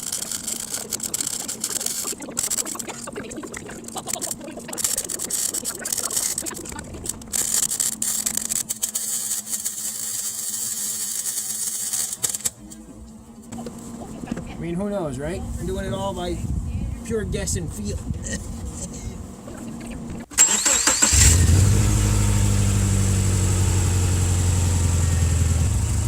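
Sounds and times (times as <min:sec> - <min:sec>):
welder arc crackling: 0:00.0 - 0:12.7.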